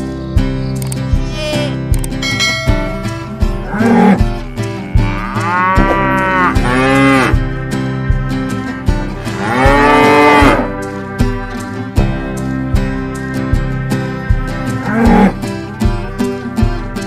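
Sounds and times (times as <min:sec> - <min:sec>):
guitar music with steady beat: 0:00.0 - 0:17.0
cattle mooing: 0:03.6 - 0:07.4, 0:09.3 - 0:10.7, 0:14.8 - 0:15.4.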